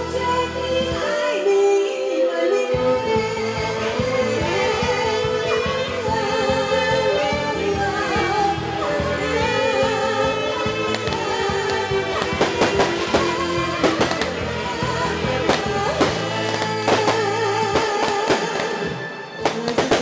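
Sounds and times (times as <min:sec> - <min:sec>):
live band playing slow pop song: 0:00.0 - 0:20.0
sharp cracks: 0:15.4 - 0:18.8, 0:19.4 - 0:20.0.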